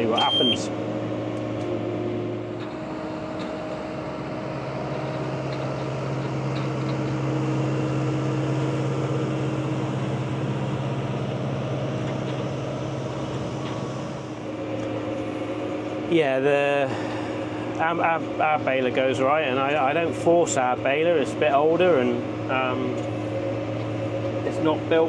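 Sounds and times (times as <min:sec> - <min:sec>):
tractor engine droning: 0:00.0 - 0:25.0.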